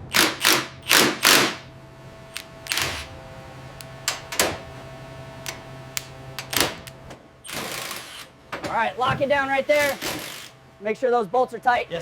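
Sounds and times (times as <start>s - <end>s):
sharp clicks: 0.0s - 1.6s, 2.3s - 3.1s
steady low hum: 0.0s - 12.0s.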